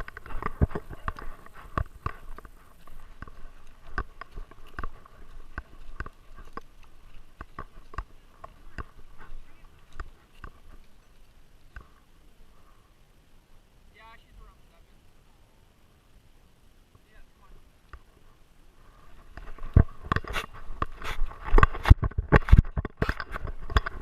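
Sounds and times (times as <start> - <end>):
camera housing knocking and rattling: 0.0 - 2.5, 19.4 - 24.0.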